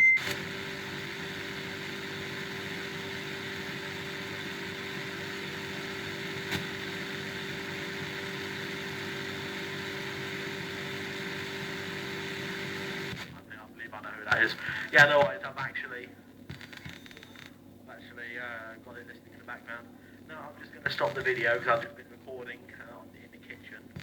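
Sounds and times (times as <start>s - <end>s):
radio hiss and hum: 13.0s - 24.0s.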